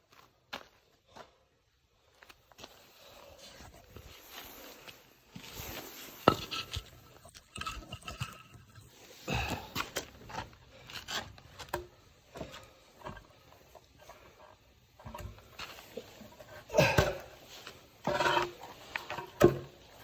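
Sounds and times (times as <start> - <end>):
firewood knocking and scraping: 5.3 - 20.0.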